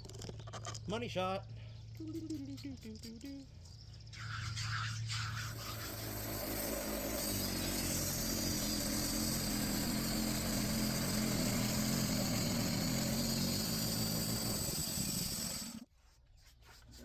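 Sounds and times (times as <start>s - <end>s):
band sawmill running: 5.5s - 15.9s.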